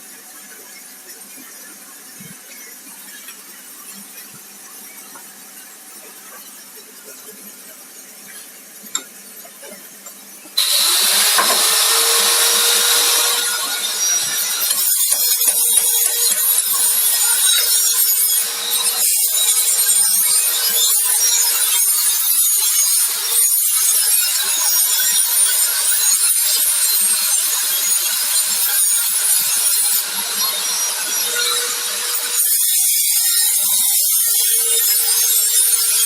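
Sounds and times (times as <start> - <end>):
milling cutter scraping metal: 10.0 - 36.0.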